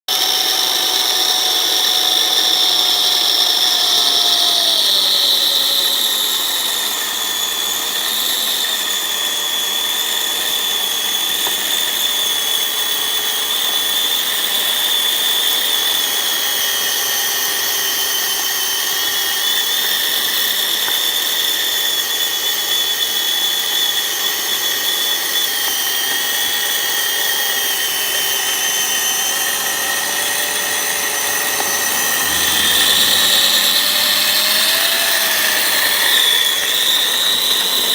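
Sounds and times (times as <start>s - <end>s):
electric motors whining: 0.1s - 37.9s.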